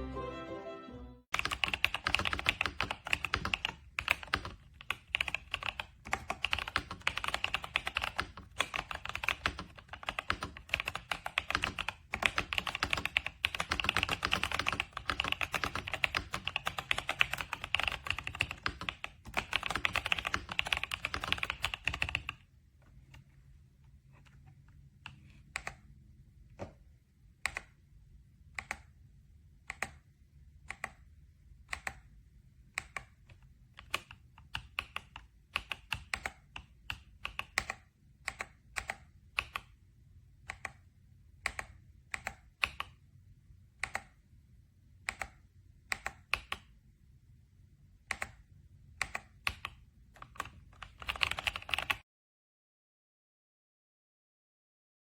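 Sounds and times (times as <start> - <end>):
mechanical keyboard typing: 1.4 - 22.5, 25.0 - 25.8, 27.4 - 27.8, 28.6 - 29.0, 29.6 - 39.8, 40.4 - 43.0, 43.7 - 44.2, 45.0 - 46.8, 48.0 - 52.0.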